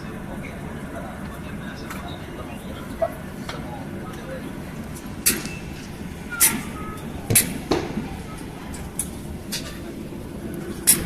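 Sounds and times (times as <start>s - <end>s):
faint voices: 0.0s - 11.0s
low cabin hum: 0.0s - 11.0s.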